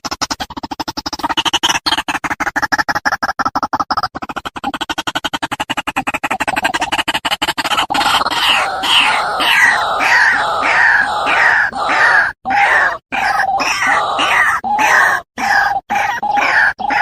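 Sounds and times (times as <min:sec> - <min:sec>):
bird calling harshly: 0:07.6 - 0:17.0.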